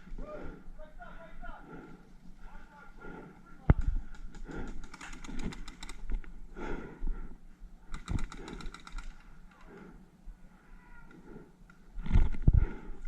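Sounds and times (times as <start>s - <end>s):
paintball markers firing rapidly: 3.7s - 6.1s, 7.8s - 9.4s.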